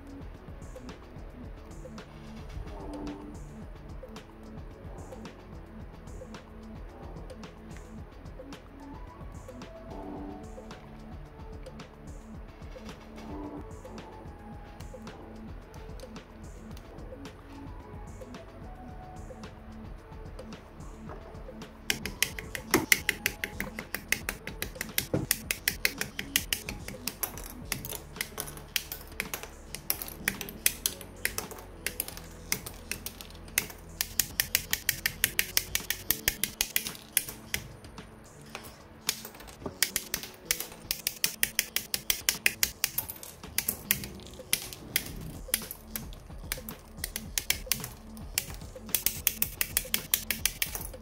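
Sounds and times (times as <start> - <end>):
background music: 0.0 - 51.0
sharp plastic clicks: 21.9 - 37.8, 38.5 - 51.0.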